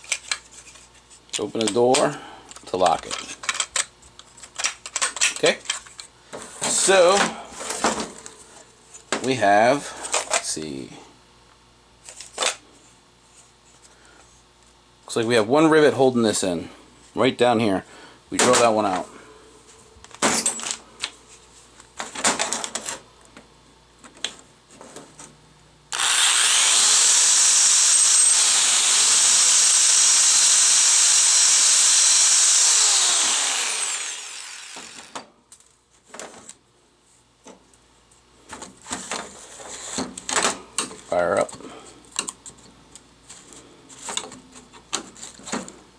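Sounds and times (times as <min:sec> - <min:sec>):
power drill drilling: 0:25.9 - 0:35.2.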